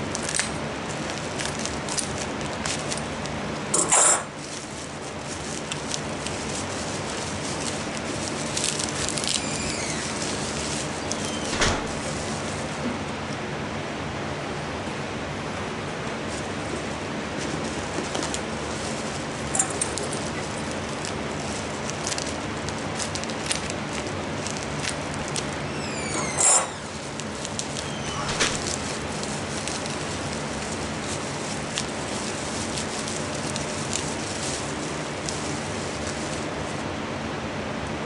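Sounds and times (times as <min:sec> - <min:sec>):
bubble wrap crinkling: 0:00.0 - 0:12.9, 0:16.1 - 0:36.9
squeak falling in pitch: 0:09.4 - 0:10.2, 0:25.7 - 0:27.0, 0:27.8 - 0:28.7.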